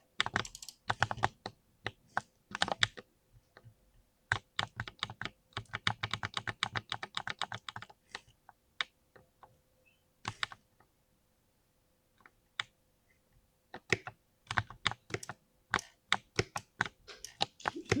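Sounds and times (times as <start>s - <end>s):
mechanical keyboard typing: 0.2s - 1.3s.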